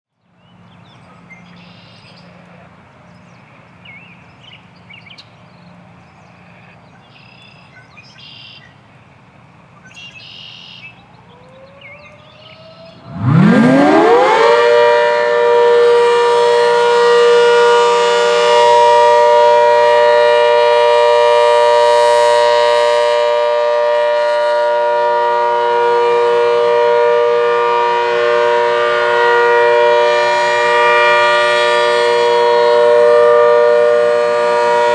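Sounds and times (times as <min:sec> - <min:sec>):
tornado siren wailing: 0:10.2 - 0:34.9.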